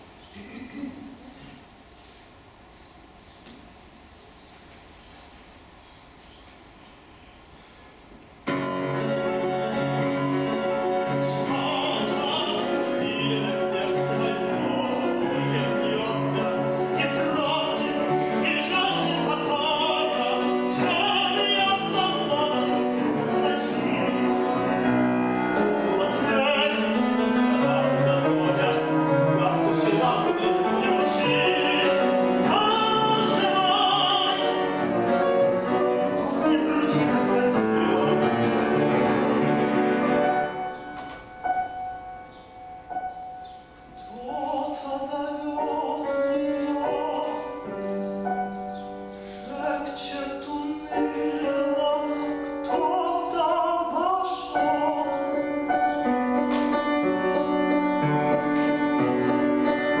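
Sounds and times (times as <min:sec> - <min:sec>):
piano accompaniment: 0:08.3 - 1:00.0
man singing operatically: 0:10.4 - 0:39.5, 0:44.0 - 0:48.0, 0:49.3 - 0:55.7.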